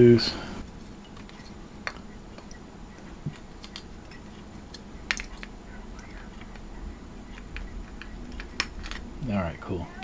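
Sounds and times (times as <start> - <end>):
plastic parts clicking: 7.4 - 9.1.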